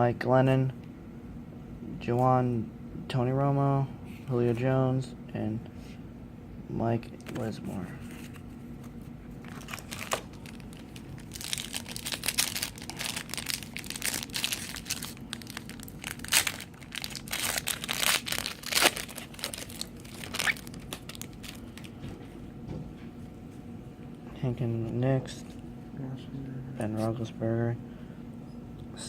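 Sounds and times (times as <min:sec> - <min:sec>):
foil wrapper crinkling and tearing: 0:09.4 - 0:21.9.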